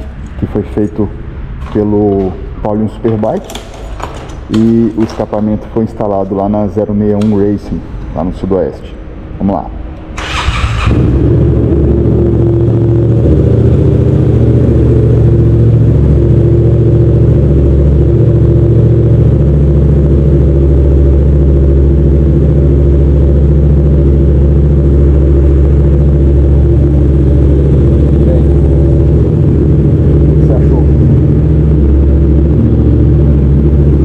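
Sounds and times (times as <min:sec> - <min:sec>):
motorcycle engine idling: 0:10.2 - 0:34.0.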